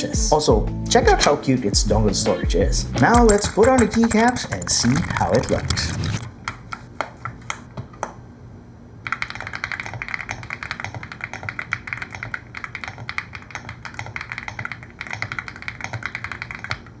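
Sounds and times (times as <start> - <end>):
mechanical keyboard typing: 3.0 - 6.3, 9.0 - 16.9.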